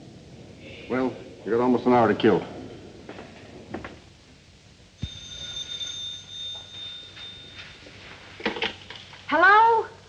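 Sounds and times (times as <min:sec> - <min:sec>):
telephone bell ringing: 0:05.0 - 0:08.0.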